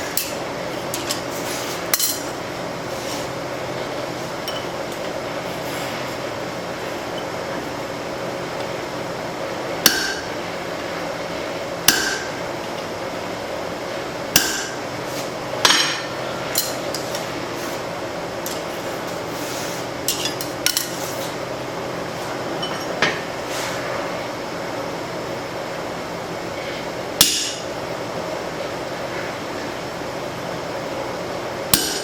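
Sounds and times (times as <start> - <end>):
hammer striking anvil: 9.9 - 10.3, 11.9 - 12.4, 14.4 - 14.8, 27.2 - 27.6, 31.8 - 32.0.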